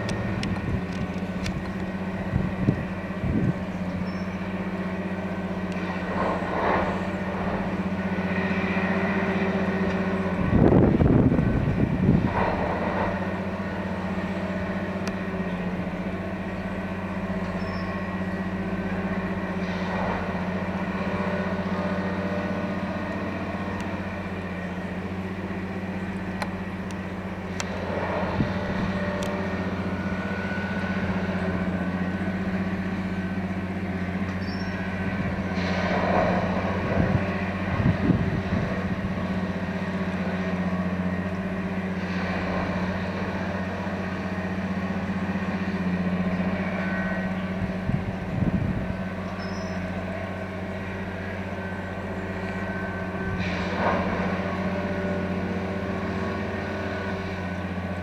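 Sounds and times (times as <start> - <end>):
diesel engine humming: 0.0 - 58.0.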